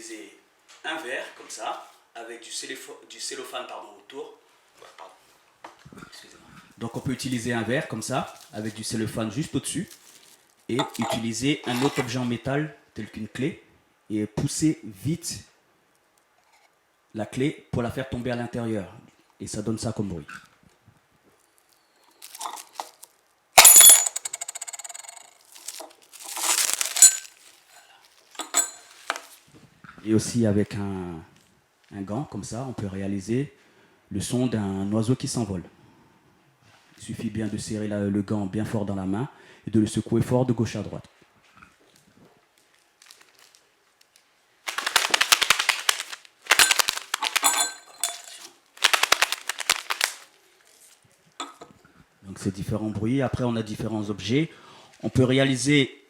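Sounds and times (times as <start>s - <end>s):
key clinking and rattling in glass: 23.6s - 27.4s, 28.4s - 29.1s, 44.7s - 50.2s
glove flapping like bird wings: 44.7s - 47.4s, 48.8s - 50.3s
scraping rustling burst: 44.7s - 50.3s.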